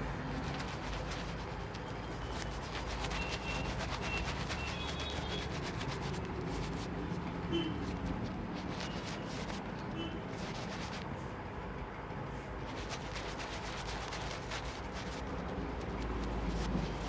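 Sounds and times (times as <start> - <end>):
razor scraping beard stubble: 0.1 - 1.6, 2.2 - 6.9, 7.9 - 9.8, 10.4 - 11.0, 12.7 - 17.0.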